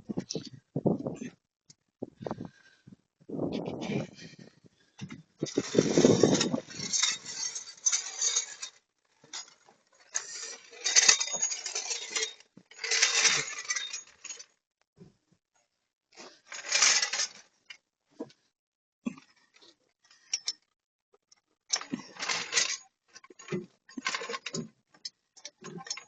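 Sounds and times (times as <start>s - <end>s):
metal tools clinking and rattling: 5.0s - 14.5s, 16.5s - 17.4s, 20.2s - 20.6s, 21.7s - 24.7s.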